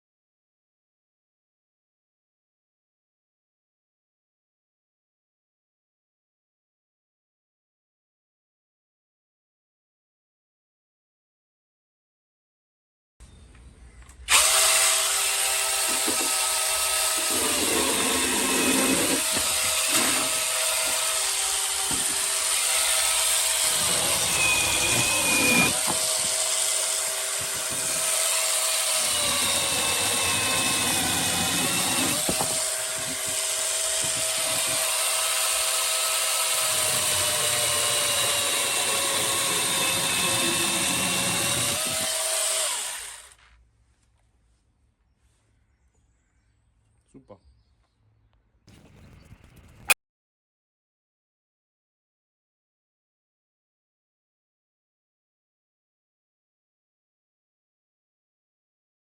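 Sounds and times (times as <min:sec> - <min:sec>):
electric chainsaw cutting wood: 0:14.2 - 0:43.4.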